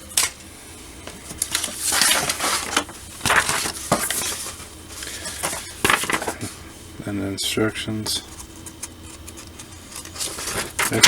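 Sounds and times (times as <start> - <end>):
plastic and paper crinkling: 1.1 - 6.6, 8.2 - 11.0.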